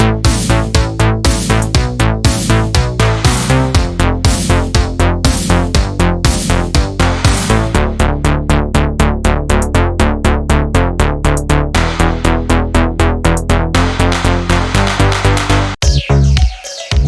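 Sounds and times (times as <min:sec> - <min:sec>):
electronic dance music: 0:00.0 - 0:08.0, 0:11.8 - 0:17.0.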